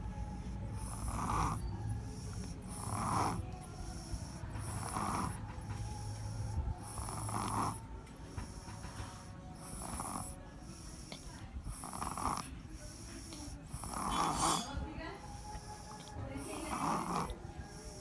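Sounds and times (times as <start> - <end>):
person snoring: 0.8 - 1.6, 2.2 - 5.4, 6.4 - 7.8, 9.6 - 14.7, 16.6 - 18.0.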